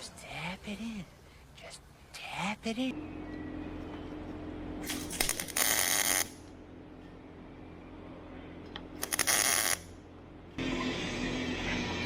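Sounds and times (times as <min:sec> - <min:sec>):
crackling welding arc: 0:04.9 - 0:06.4, 0:09.0 - 0:09.9.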